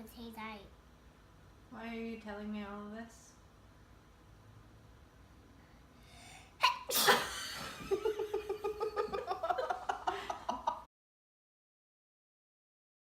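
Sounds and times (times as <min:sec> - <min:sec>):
child sneezing: 0:06.5 - 0:07.5
child laughing rhythmically: 0:07.6 - 0:10.8.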